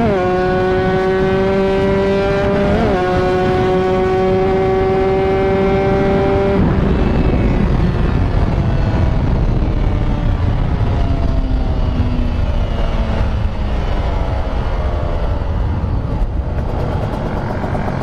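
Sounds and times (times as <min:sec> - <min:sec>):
two-stroke motorcycle engine revving: 0:00.0 - 0:08.5.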